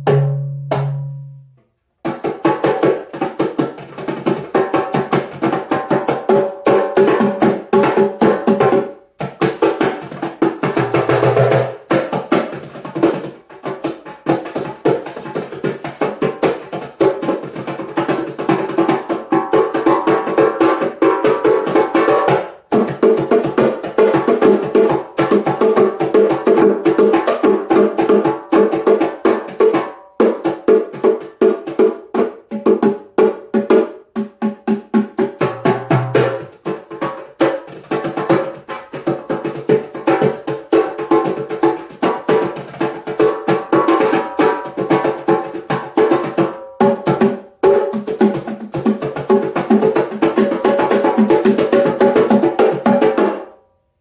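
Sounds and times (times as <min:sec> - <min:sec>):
fast percussive strokes: 0:00.0 - 0:53.5.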